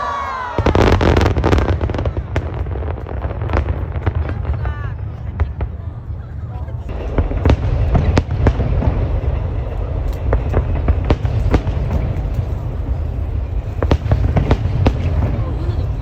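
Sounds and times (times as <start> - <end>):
fireworks bangs and cracks: 0.0 - 16.0.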